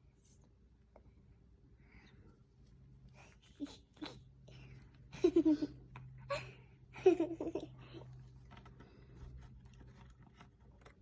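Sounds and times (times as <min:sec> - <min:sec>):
giggling laughter: 0:05.1 - 0:06.4, 0:07.0 - 0:08.0.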